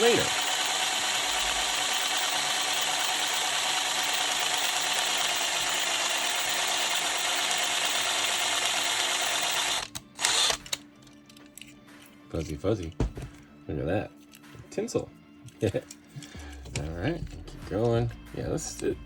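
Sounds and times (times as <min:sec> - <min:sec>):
drill bit grinding into metal: 0:00.0 - 0:10.8.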